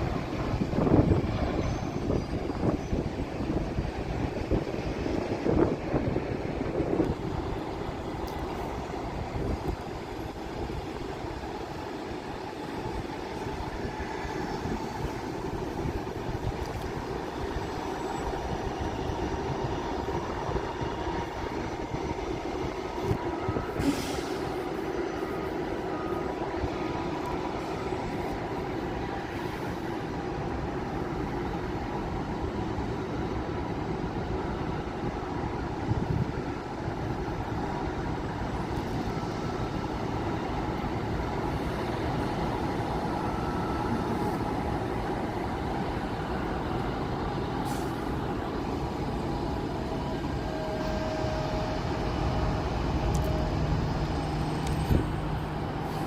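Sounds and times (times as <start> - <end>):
steady engine drone: 0.0 - 56.0.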